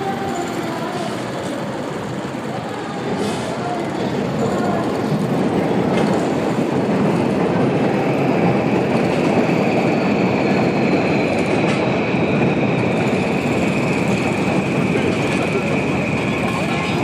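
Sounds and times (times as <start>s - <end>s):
train rumbling on tracks: 0.0s - 17.0s.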